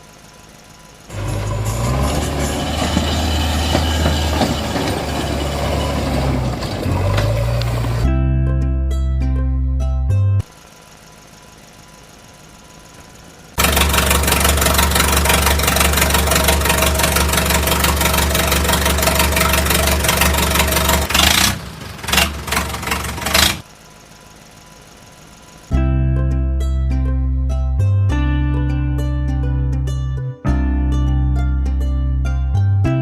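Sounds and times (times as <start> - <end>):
motor running: 10.4 - 25.8.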